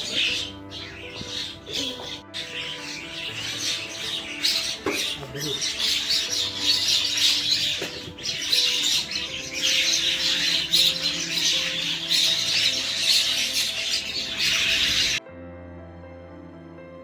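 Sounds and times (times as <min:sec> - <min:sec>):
birds chattering and squawking: 0:00.0 - 0:15.2
background music: 0:00.0 - 0:17.0.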